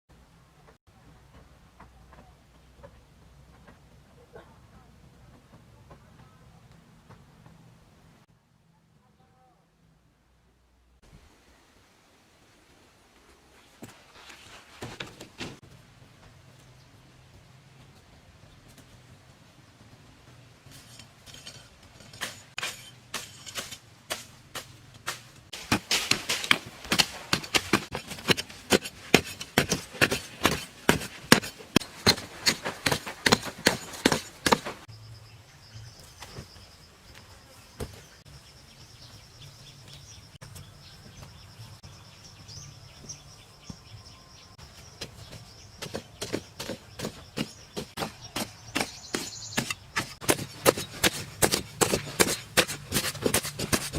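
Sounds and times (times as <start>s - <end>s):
hand tool striking: 20.8s - 34.9s, 45.8s - 53.9s.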